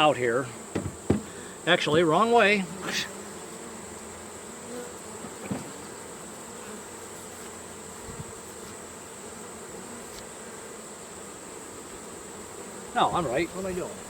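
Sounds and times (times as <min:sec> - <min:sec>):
bees buzzing: 0:00.0 - 0:14.0
hive equipment knocks: 0:00.7 - 0:02.1, 0:05.2 - 0:05.8.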